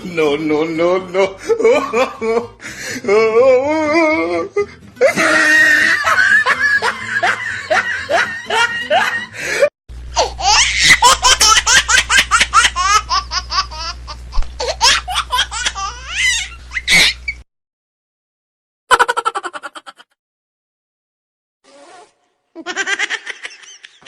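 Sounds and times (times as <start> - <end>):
hearty laughter: 1.2 - 2.8, 5.0 - 9.7, 22.6 - 24.0.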